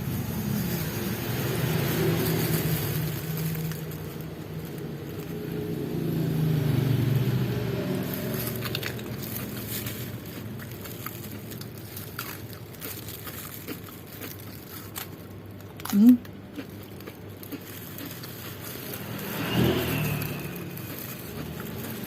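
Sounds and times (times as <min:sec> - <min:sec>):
vehicle engine passing by: 0:00.0 - 0:11.6, 0:17.7 - 0:22.0
person eating with crunches: 0:00.1 - 0:22.0.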